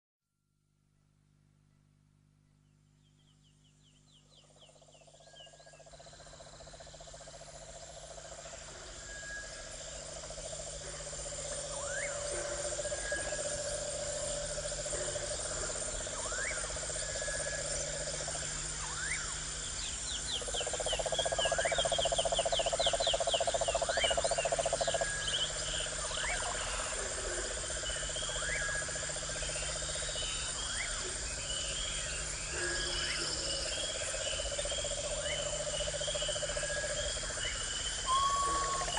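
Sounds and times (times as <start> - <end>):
insects trilling: 3.2 - 38.9
frogs calling: 4.2 - 38.9.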